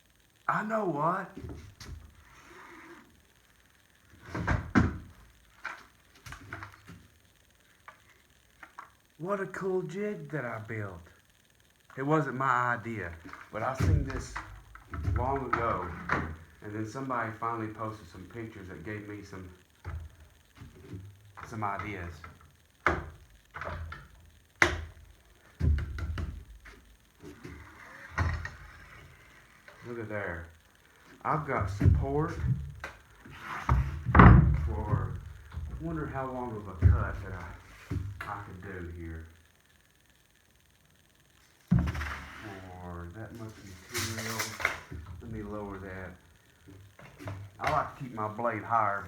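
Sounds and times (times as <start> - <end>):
wooden jig rubbing and sliding: 19.8 - 38.6
object knocks and clunks: 25.6 - 28.9, 31.6 - 38.4.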